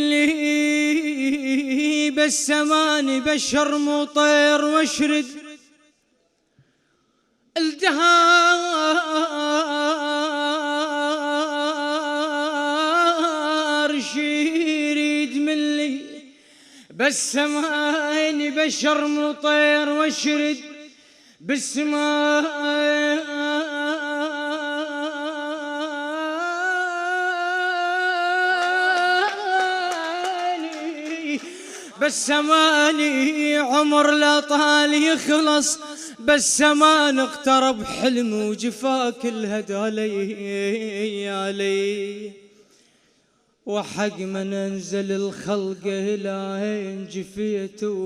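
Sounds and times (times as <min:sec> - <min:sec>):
man singing with vibrato: 0:00.0 - 0:05.9, 0:07.5 - 0:42.6, 0:43.6 - 0:48.0
man singing long vibrato note: 0:21.5 - 0:42.3.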